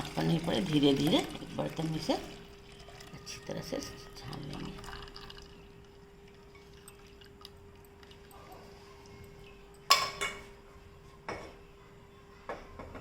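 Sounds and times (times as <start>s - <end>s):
kitchen utensils clanking: 9.8s - 10.5s.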